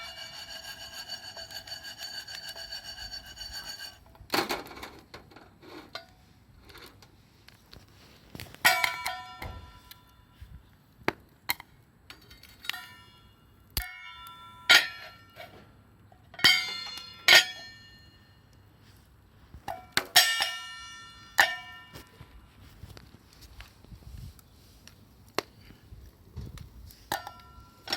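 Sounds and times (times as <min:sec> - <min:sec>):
metal objects clanking: 0:00.0 - 0:06.1, 0:12.1 - 0:18.4, 0:19.7 - 0:22.1, 0:27.1 - 0:27.9.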